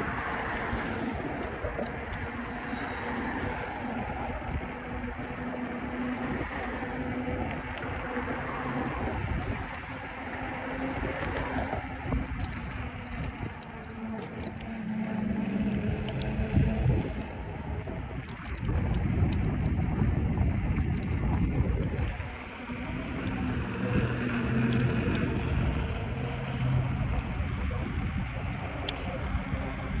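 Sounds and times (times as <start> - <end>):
bicycle rolling noise: 0.0 - 30.0
low wavering hum: 0.0 - 30.0
wind rumbling on microphone: 0.0 - 30.0
faint ticks: 20.8 - 30.0.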